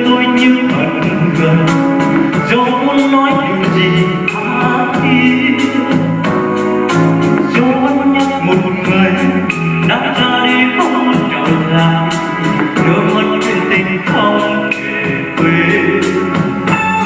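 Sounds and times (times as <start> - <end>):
steady drum beat: 0.0 - 17.0
wavering melody line: 3.8 - 17.0.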